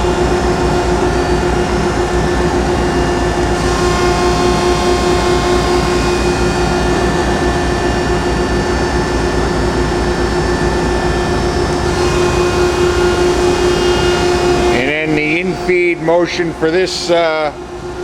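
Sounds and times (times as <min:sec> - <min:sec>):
grinding machine humming: 0:00.0 - 0:18.0.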